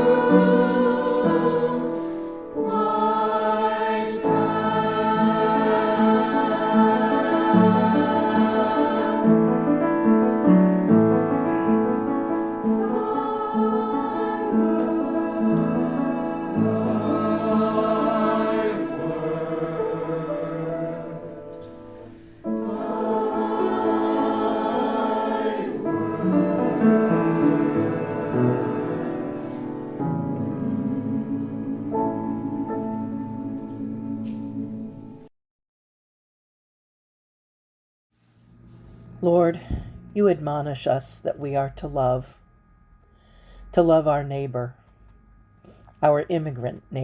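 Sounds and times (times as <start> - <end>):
choir singing a hymn: 0.0 - 35.3.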